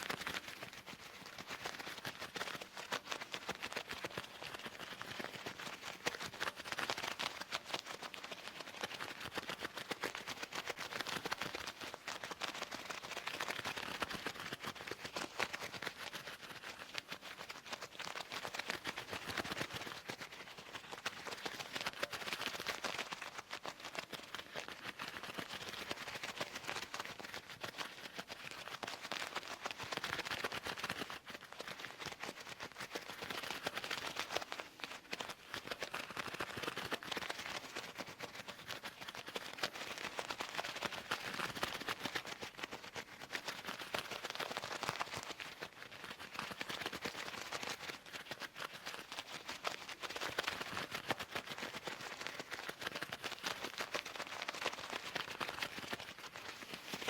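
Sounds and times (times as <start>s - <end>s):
leather gloves rustling and creasing: 31.2s - 57.0s.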